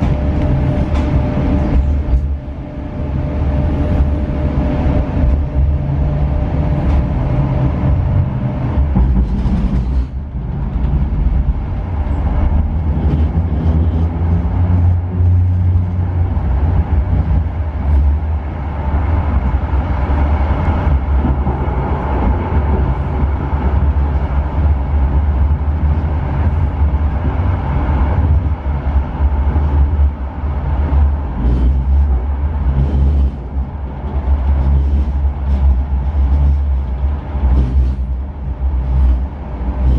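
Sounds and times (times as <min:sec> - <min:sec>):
vehicle engine rumble: 0:00.0 - 0:39.9.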